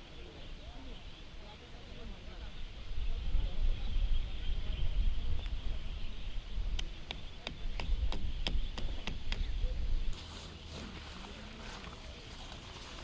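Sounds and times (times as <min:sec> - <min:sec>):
strong wind buffeting microphone: 0:02.3 - 0:10.2.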